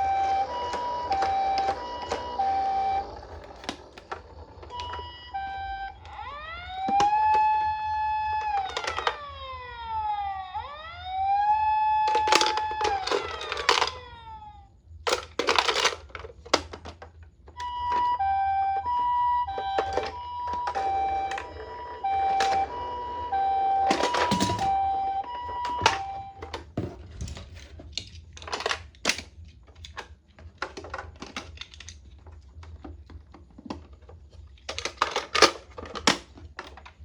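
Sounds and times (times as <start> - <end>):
toy electronic siren: 0.0 - 16.0, 17.5 - 26.8.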